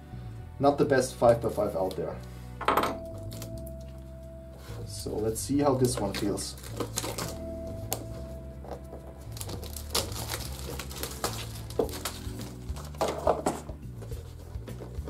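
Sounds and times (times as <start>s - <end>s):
soft background music: 0.0s - 15.0s
packaging clicks and rustles: 5.8s - 15.0s.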